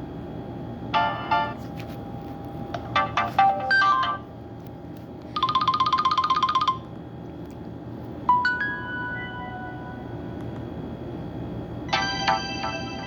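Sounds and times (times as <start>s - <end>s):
phone ringtone melodies: 2.9s - 4.2s, 5.4s - 6.9s, 11.9s - 13.0s.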